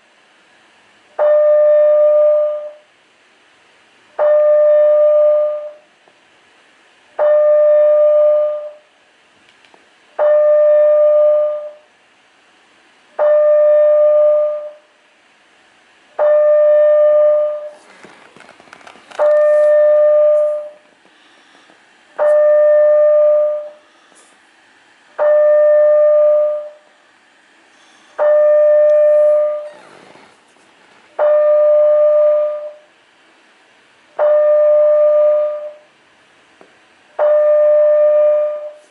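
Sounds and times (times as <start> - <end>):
fire alarm tone: 1.2 - 2.9, 4.2 - 5.9, 7.2 - 8.9, 10.2 - 11.9, 13.2 - 14.9, 16.2 - 17.8, 19.2 - 20.8, 22.2 - 23.8, 25.2 - 26.8, 28.2 - 29.8, 31.2 - 32.9, 34.2 - 35.9, 37.2 - 38.8.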